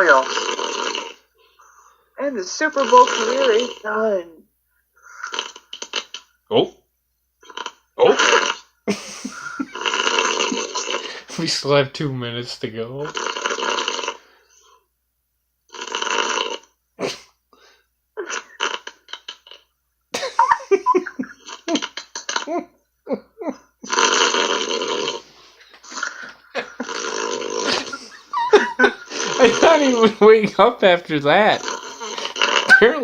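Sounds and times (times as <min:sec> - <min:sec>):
snorts and gurgles: 0:00.0 - 0:01.2, 0:07.4 - 0:08.7, 0:23.8 - 0:30.1, 0:31.6 - 0:33.0
man snoring: 0:00.0 - 0:01.3, 0:02.8 - 0:03.9, 0:07.4 - 0:11.4, 0:13.0 - 0:14.4, 0:15.7 - 0:17.2, 0:23.8 - 0:30.1, 0:31.3 - 0:33.0.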